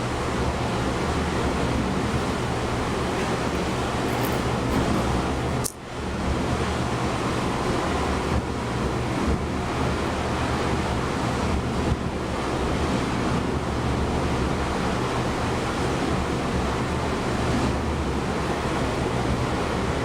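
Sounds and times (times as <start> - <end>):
ocean waves rushing: 0.0 - 11.6.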